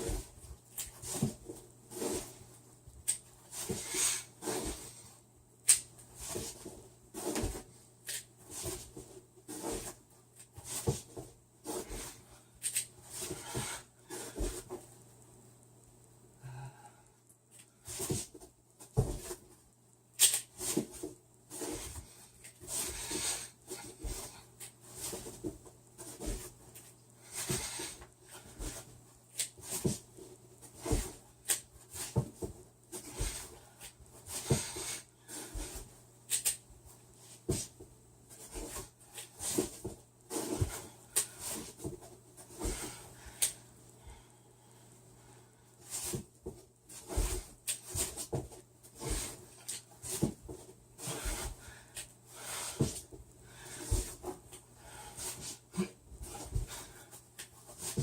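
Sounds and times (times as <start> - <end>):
person breathing heavily: 16.4 - 17.2, 54.8 - 57.2.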